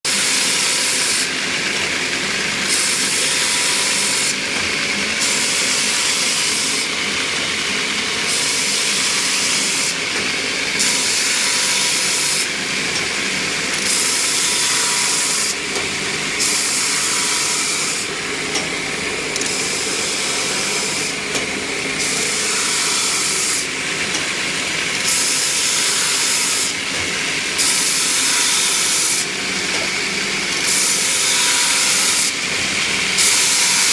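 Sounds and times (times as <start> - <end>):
grinder motor humming: 0.1 - 33.9
abrasive belt grinding hiss: 27.4 - 33.9.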